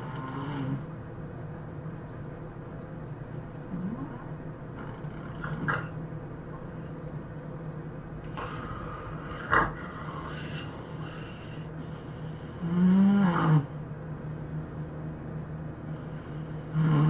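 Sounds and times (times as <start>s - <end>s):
person snoring: 0.0s - 0.8s, 8.4s - 13.7s, 16.0s - 17.0s.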